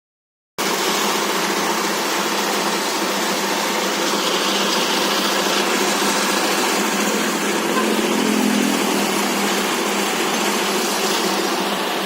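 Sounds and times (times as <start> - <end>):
diesel-driven mill droning: 2.0 - 12.0.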